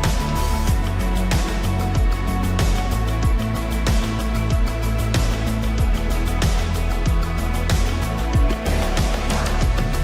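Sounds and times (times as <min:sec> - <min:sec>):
music with heavy kick drums: 0:00.0 - 0:10.0.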